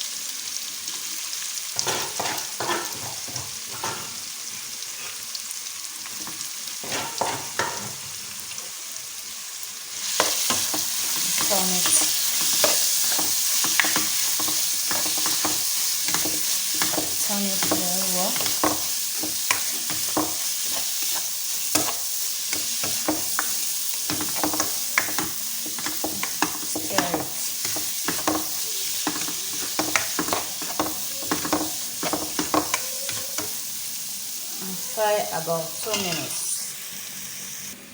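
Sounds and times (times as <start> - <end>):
food sizzling in oil: 0.0 - 37.9
spoon scraping pan: 1.8 - 4.2, 10.0 - 33.6, 34.7 - 36.5.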